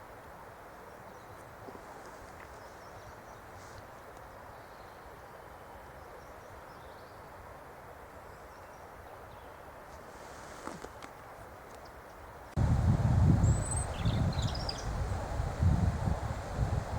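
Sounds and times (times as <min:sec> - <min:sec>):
outdoor background hiss: 0:00.0 - 0:16.9
small birds chirping: 0:12.6 - 0:16.9.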